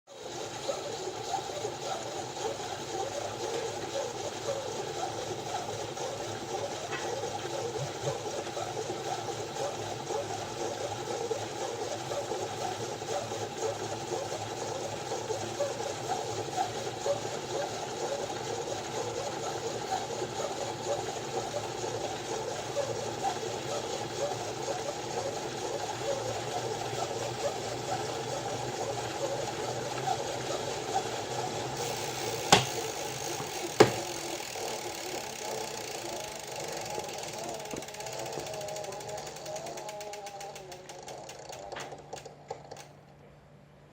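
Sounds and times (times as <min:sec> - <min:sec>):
bike trainer crackling: 0:31.7 - 0:42.2.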